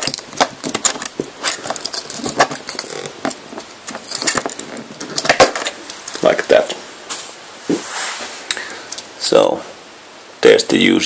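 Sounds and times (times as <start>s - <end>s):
small clicks taps and rustles: 0.0s - 6.5s.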